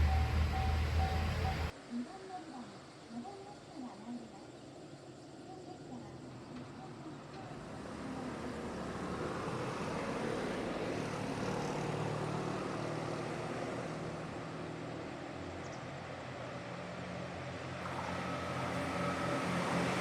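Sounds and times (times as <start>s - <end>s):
vehicle passing: 0.0s - 1.7s, 7.6s - 15.2s, 16.8s - 20.0s.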